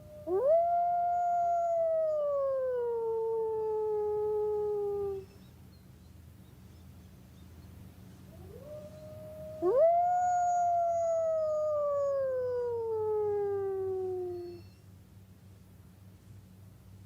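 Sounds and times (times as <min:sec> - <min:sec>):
wolf howling: 0:08.3 - 0:14.7.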